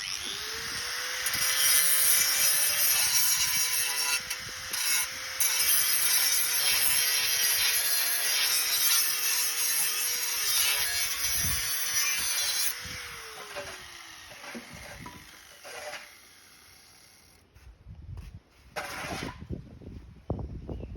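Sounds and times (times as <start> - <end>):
grinder sharpening metal blade: 1.2 - 12.8.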